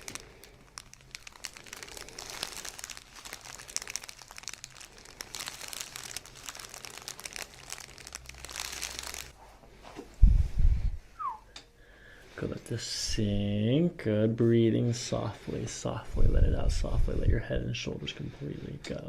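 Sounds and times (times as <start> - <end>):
crinkling and rustling on table: 0.0 - 10.1.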